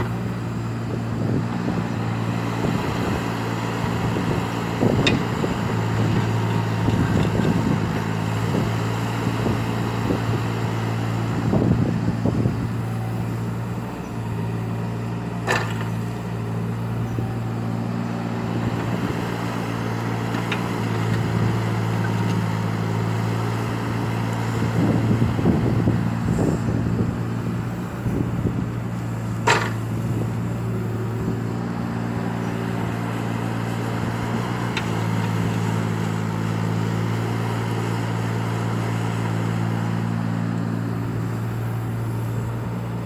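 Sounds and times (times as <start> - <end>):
excavator diesel engine running: 0.0 - 43.0.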